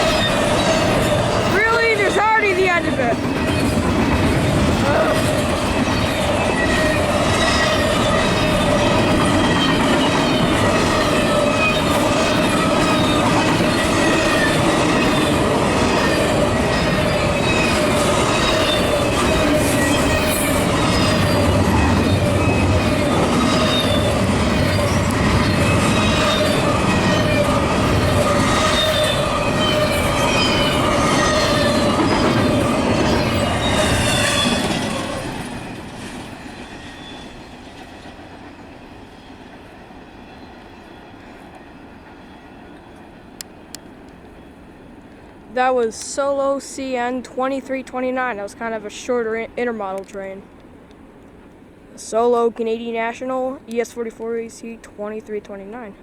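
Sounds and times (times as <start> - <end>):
wheel squeal: 0.0 - 1.6, 5.2 - 27.5, 36.4 - 37.6
freight train wheels clattering: 0.0 - 44.5.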